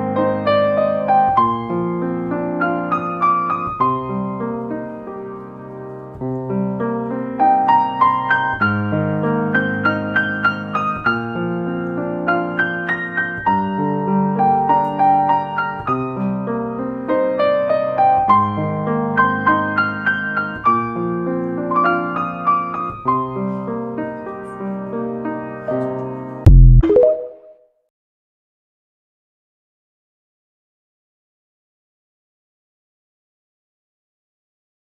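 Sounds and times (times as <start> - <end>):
gentle piano music: 0.0 - 27.5.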